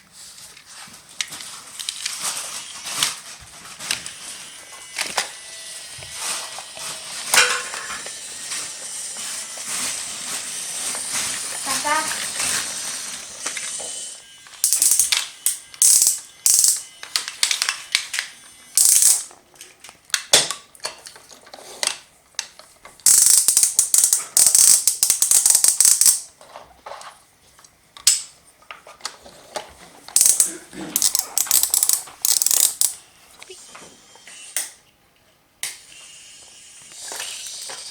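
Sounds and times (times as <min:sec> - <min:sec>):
toy packaging rustling and clicking: 0:00.6 - 0:05.3, 0:14.5 - 0:26.6, 0:28.0 - 0:33.0.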